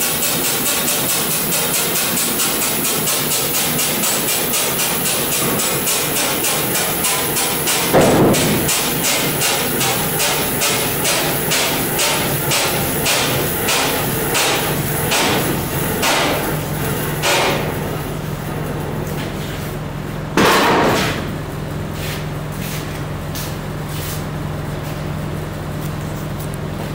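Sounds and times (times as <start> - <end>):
band saw humming: 4.8 - 18.2
loud burst of noise: 7.8 - 18.0.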